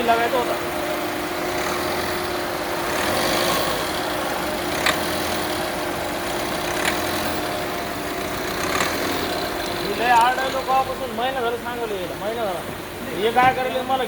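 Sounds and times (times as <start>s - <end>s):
sharp ticks: 0.0s - 11.2s
car engine running: 0.0s - 13.0s.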